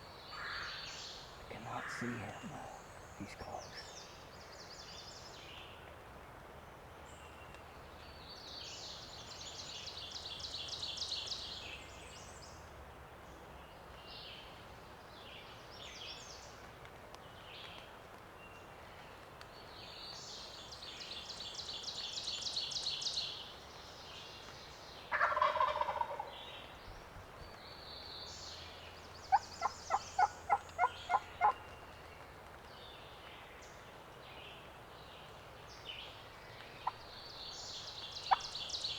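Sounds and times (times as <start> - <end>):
songbird singing: 0.0 - 5.9, 17.2 - 38.9
turkey gobbling: 25.1 - 26.3, 29.3 - 31.6
turkey yelping: 25.1 - 26.3, 29.3 - 31.6.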